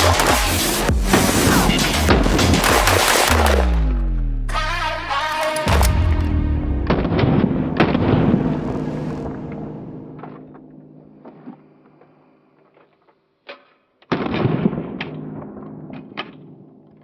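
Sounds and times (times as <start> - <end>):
sharp clicks: 0.0 - 0.9, 2.6 - 4.0, 5.2 - 6.6
loud boom-like hit: 5.6 - 9.5.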